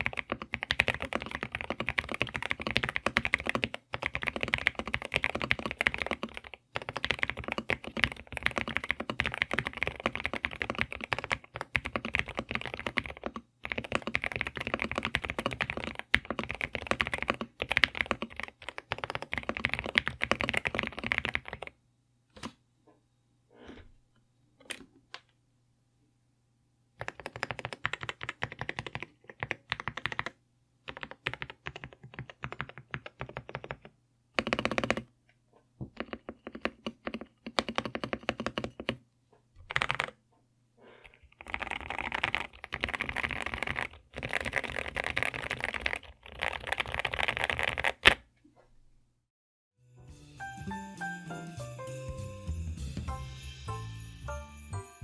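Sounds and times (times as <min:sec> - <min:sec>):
mechanical keyboard typing: 0:00.0 - 0:21.8, 0:27.0 - 0:35.1, 0:35.9 - 0:39.0, 0:39.6 - 0:40.2, 0:41.2 - 0:48.2.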